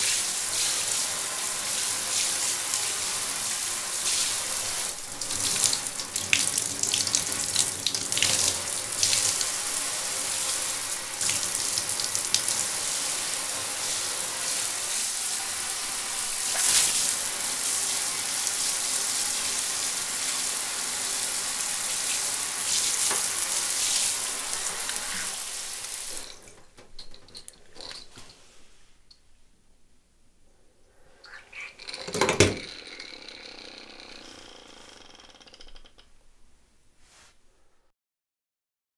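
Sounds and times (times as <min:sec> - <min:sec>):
shower running: 0:00.0 - 0:28.8, 0:31.0 - 0:36.0
faint small noises: 0:24.5 - 0:37.9.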